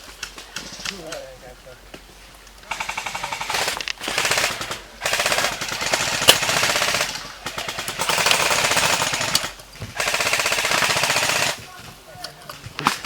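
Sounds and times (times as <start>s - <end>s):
sharp crack: 2.0s - 13.0s
airsoft gun firing bursts: 2.7s - 11.7s.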